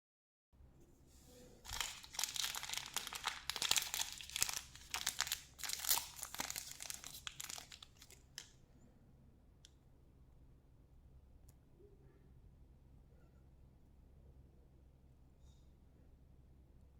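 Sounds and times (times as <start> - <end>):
plastic wrapper crinkling and tearing: 1.6 - 8.6.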